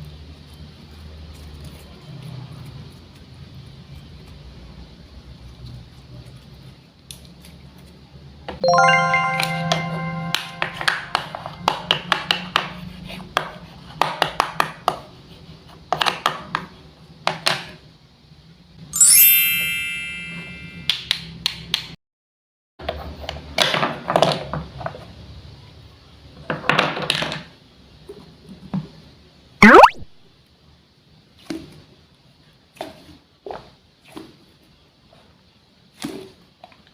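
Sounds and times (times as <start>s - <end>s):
bright chime: 8.6s - 11.6s, 19.0s - 20.9s.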